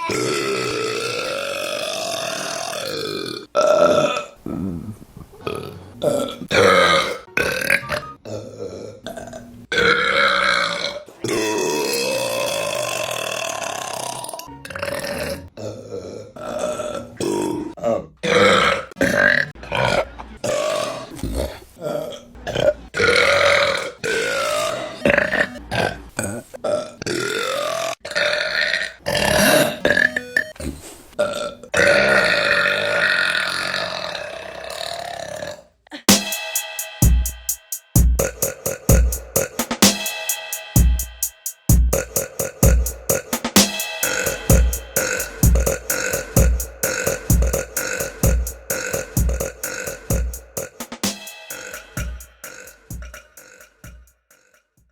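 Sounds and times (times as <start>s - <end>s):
women burping: 0.0s - 4.3s.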